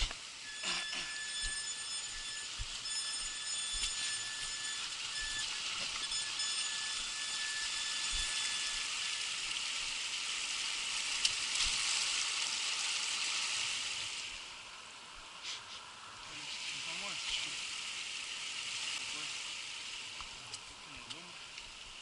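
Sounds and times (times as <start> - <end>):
faint high whine: 0.0 - 12.6
stream rushing over stones: 8.5 - 14.8, 16.3 - 22.0.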